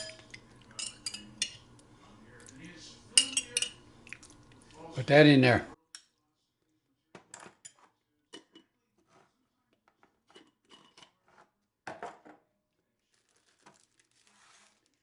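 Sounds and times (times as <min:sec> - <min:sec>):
utensil clinking against jar: 0:03.2 - 0:03.8.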